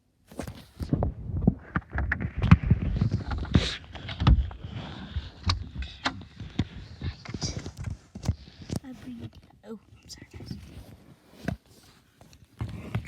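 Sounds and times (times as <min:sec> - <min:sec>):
rustling: 0:10.2 - 0:13.0.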